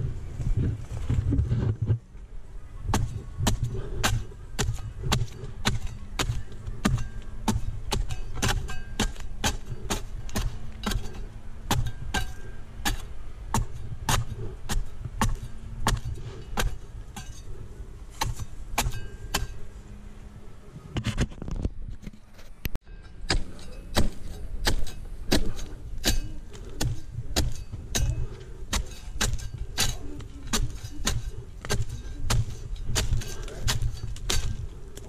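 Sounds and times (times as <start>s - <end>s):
blade chopping palm fronds: 2.9s - 17.4s, 23.2s - 35.0s.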